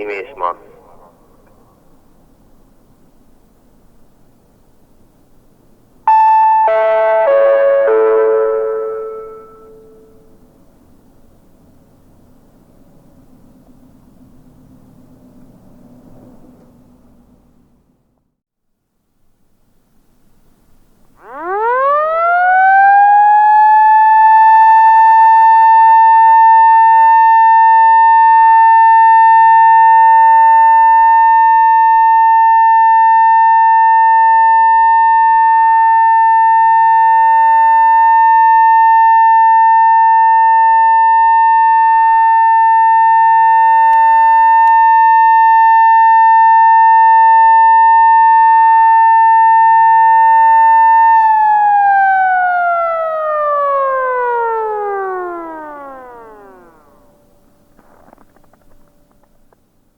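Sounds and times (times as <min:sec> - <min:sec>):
electronic siren over loudspeaker: 0:06.1 - 0:10.2, 0:21.2 - 0:57.4.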